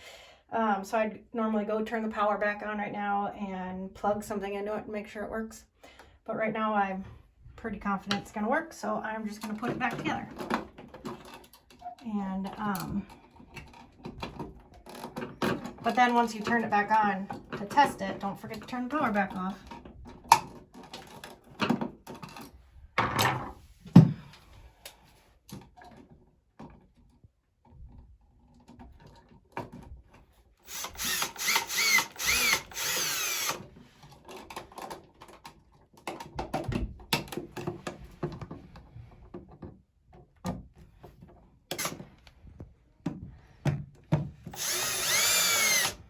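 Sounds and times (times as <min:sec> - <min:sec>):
cordless drill whining: 0:30.6 - 0:33.6, 0:44.5 - 0:46.0.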